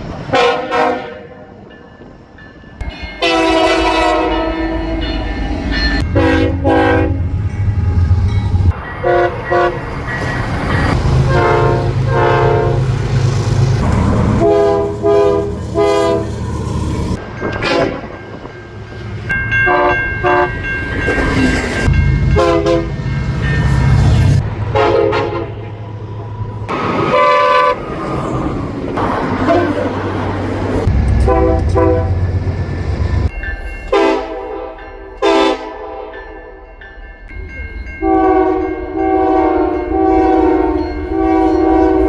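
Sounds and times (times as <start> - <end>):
low rumble of trains: 0.0 - 42.0
train air horns blowing: 0.3 - 1.5, 3.1 - 5.1, 6.0 - 7.4, 9.0 - 9.9, 11.0 - 13.1, 13.9 - 16.4, 19.7 - 20.5, 22.3 - 23.0, 24.7 - 25.6, 27.1 - 27.8, 29.4 - 30.0, 31.2 - 32.2, 33.9 - 36.1, 38.0 - 42.0.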